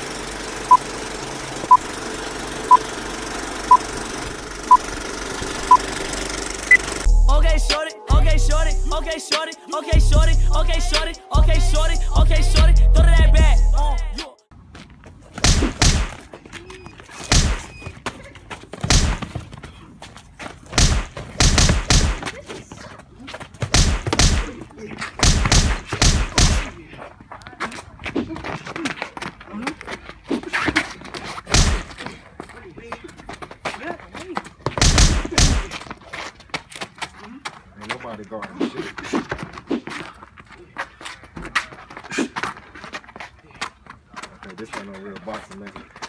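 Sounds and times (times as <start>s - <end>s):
heavy punch thuds: 15.3s - 16.4s, 17.2s - 18.0s, 18.7s - 19.7s, 20.6s - 22.4s, 23.6s - 26.8s, 31.5s - 32.0s, 34.7s - 35.9s.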